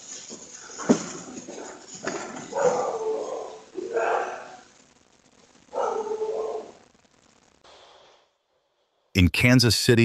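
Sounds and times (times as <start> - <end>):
faint background hiss: 3.7 - 10.0.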